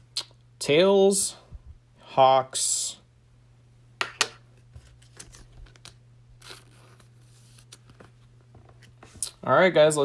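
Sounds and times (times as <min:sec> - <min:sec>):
cards rustling and tapping: 0:04.2 - 0:09.3.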